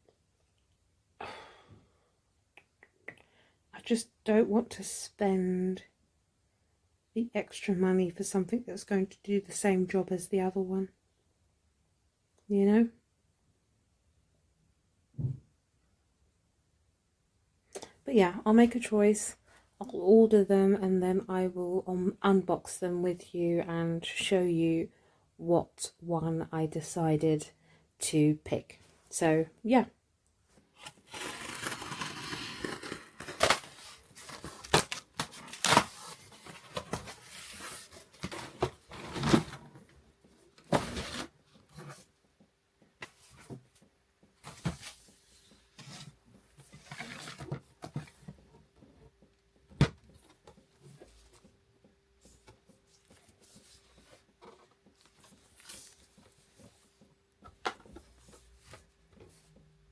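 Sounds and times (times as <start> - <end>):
packaging tearing and rustling: 30.8 - 39.6.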